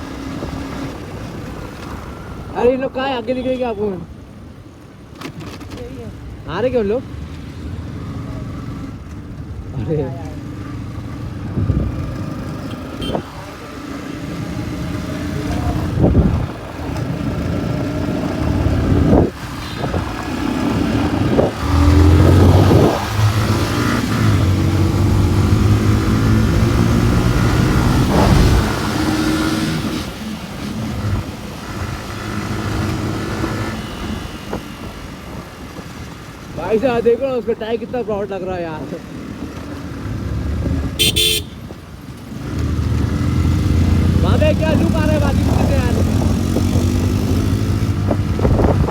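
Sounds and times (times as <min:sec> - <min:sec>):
motorcycle engine revving: 0:10.3 - 0:34.7, 0:39.1 - 0:48.9.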